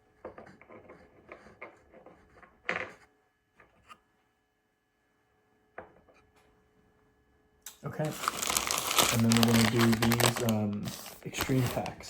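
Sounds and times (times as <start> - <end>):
packaging rustling: 8.0 - 12.0.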